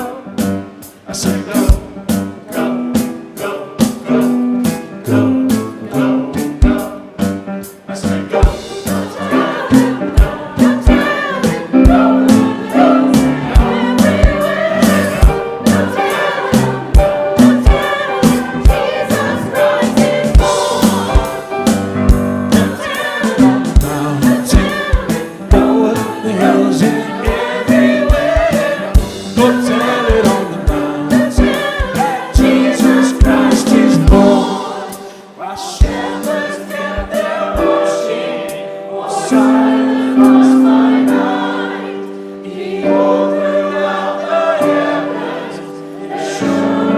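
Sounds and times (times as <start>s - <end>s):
choir singing gospel song: 0.0s - 46.9s
steady drum beat: 1.3s - 7.4s, 8.1s - 35.1s, 35.8s - 37.8s.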